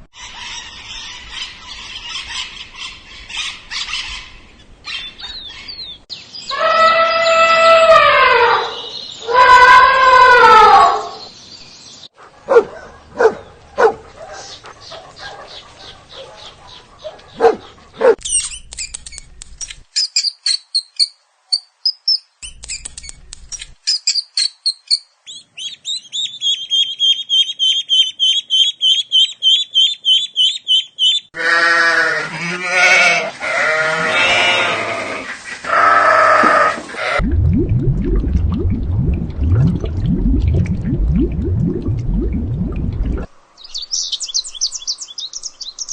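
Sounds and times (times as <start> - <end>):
clicks and high chirps: 18.2 - 24.9
bleating calls: 31.4 - 37.2
animal call falling in pitch: 35.7 - 37.2.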